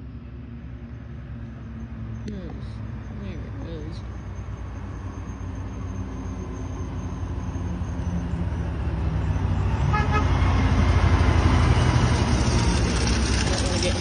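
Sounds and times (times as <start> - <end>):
truck diesel engine: 0.0 - 14.0
horn toot: 9.9 - 10.4.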